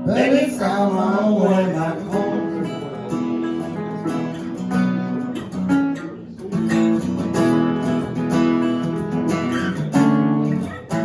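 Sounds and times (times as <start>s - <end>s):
person singing: 0.0s - 4.4s
acoustic guitars strumming: 0.0s - 11.0s.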